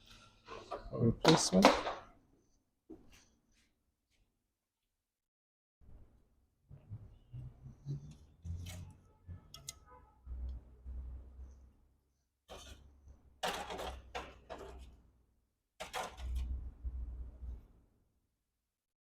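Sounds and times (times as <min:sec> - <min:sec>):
tools and parts clicking and knocking: 0:13.4 - 0:15.0, 0:15.8 - 0:16.5.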